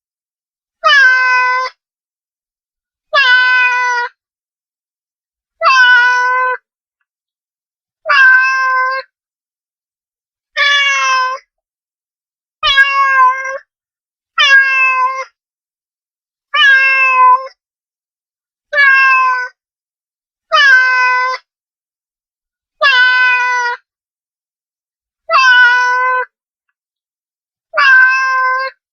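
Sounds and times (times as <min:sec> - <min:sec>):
cat meowing: 0:00.8 - 0:01.8, 0:03.1 - 0:04.2, 0:05.6 - 0:06.6, 0:08.0 - 0:09.1, 0:10.6 - 0:11.4, 0:12.6 - 0:13.6, 0:14.4 - 0:15.3, 0:16.6 - 0:17.5, 0:18.7 - 0:19.6, 0:20.5 - 0:21.4, 0:22.8 - 0:23.8, 0:25.3 - 0:26.3, 0:27.8 - 0:28.8.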